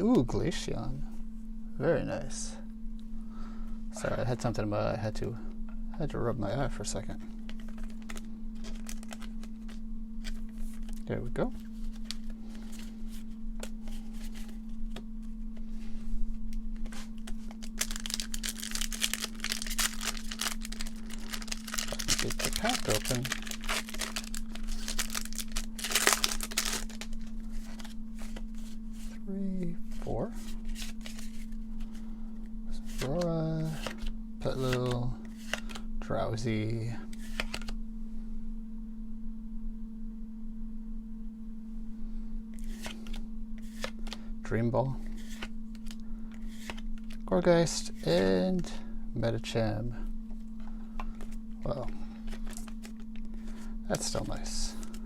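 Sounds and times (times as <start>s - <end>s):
low steady hum: 0.0s - 55.0s
trading cards rustling: 7.0s - 32.0s, 32.7s - 35.9s, 37.1s - 37.8s, 42.6s - 48.3s, 50.3s - 55.0s
foil wrapper crinkling: 7.4s - 12.8s, 17.2s - 29.2s, 51.2s - 55.0s
wrapper tearing and crackling: 7.7s - 9.8s, 17.5s - 28.0s.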